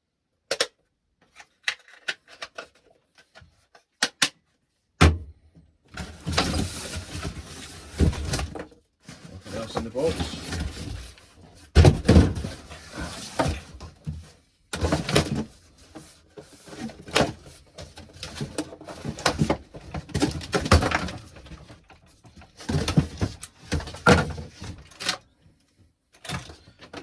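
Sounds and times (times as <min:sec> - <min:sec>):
packaging rustling and scraping: 0:06.0 - 0:25.1.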